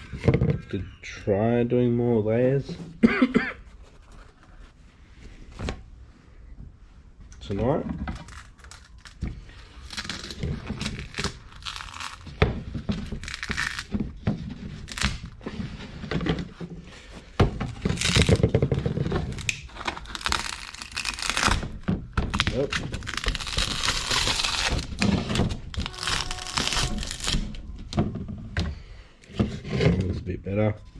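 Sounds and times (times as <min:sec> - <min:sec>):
plastic film crinkling and tearing: 0:08.1 - 0:15.4, 0:17.8 - 0:27.6
scrapes and knocks: 0:10.4 - 0:30.9.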